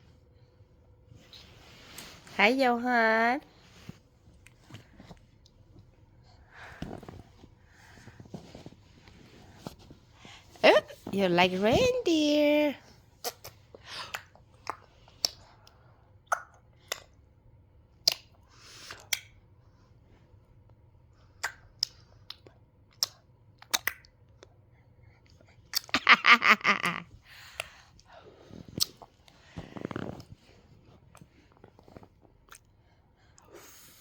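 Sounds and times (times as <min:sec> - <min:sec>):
baby lip and tongue smacks: 0:13.2 - 0:17.2, 0:18.0 - 0:19.3, 0:21.4 - 0:24.5, 0:25.7 - 0:25.9.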